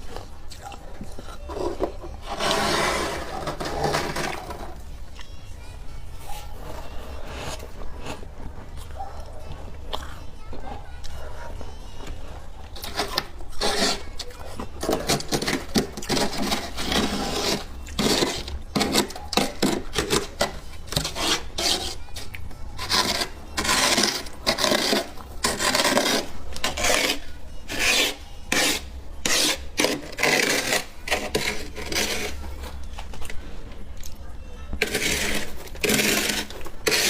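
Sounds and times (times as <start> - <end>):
rasping scraping strokes: 2.2 - 4.8, 11.6 - 32.5, 34.8 - 37.0.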